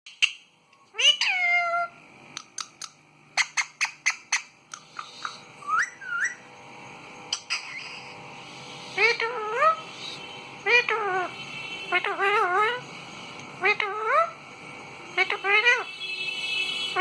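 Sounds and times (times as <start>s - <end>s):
parrot chirps: 0.1s - 6.4s, 7.3s - 8.2s
parrot whistling: 3.4s - 6.4s.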